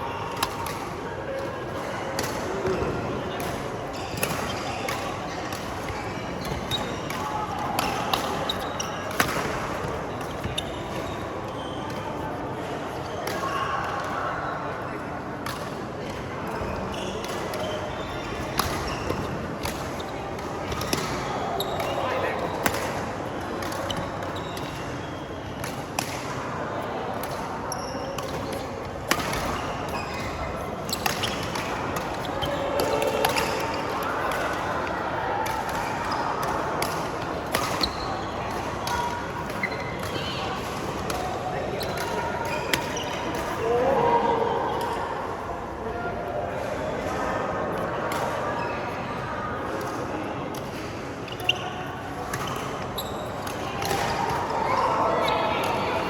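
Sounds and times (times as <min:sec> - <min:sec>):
background chatter: 0:00.0 - 0:56.0
rackets hitting shuttlecock: 0:01.8 - 0:11.0, 0:18.4 - 0:24.8
shoes squeaking on court floor: 0:02.5 - 0:12.3, 0:16.5 - 0:22.7, 0:23.6 - 0:25.5, 0:27.2 - 0:34.7, 0:37.6 - 0:38.4, 0:39.4 - 0:40.4, 0:51.2 - 0:54.0.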